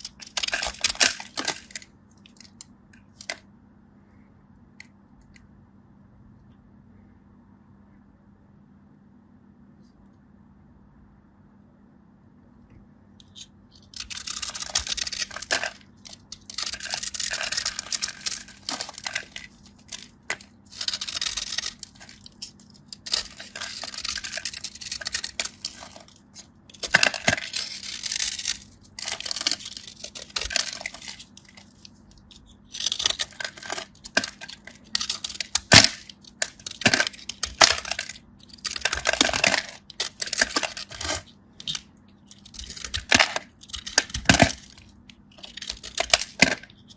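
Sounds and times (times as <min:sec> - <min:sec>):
brittle packaging crackling: 0:00.0 - 0:03.4, 0:13.2 - 0:46.9.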